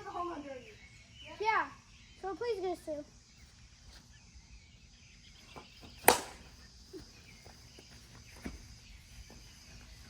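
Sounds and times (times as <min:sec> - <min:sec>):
faint outdoor background: 0:00.0 - 0:10.0
plastic bat striking ball: 0:06.0 - 0:06.5.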